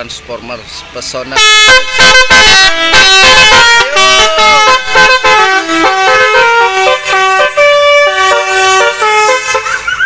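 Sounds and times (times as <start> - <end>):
bus musical horn tune: 1.4 - 10.0.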